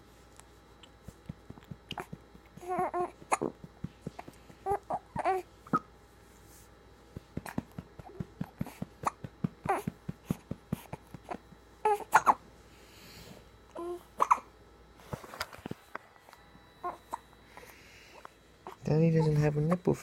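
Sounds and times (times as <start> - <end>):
baby fussy babbling cries: 1.9 - 3.6, 4.6 - 5.5, 9.0 - 10.0, 11.3 - 12.4
baby hiccuping: 12.1 - 12.4, 14.2 - 14.5.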